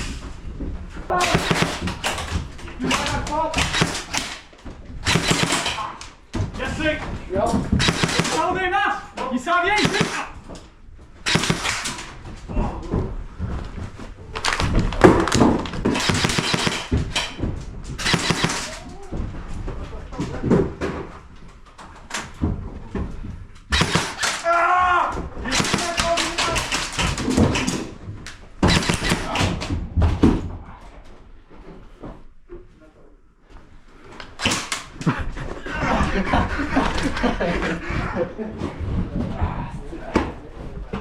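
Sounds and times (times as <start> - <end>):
thuds: 0.0 - 8.6, 9.8 - 21.3, 22.2 - 30.8
airsoft gun bursts of rapid clicks: 1.1 - 2.3, 2.9 - 5.9, 7.8 - 8.5, 9.8 - 10.3, 11.2 - 12.1, 15.9 - 17.4, 18.0 - 18.8, 23.7 - 24.4, 25.5 - 27.8, 28.6 - 29.4, 34.4 - 34.9.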